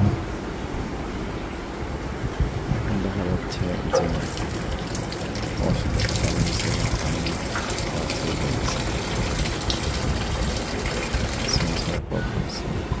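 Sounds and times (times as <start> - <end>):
water gushing into washing machine: 3.9 - 12.1.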